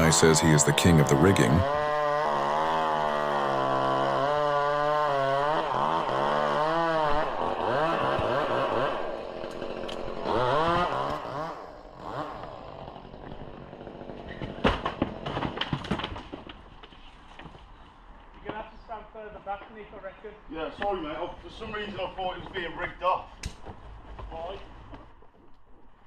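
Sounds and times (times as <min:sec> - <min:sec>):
chainsaw running and cutting: 0:00.0 - 0:15.8.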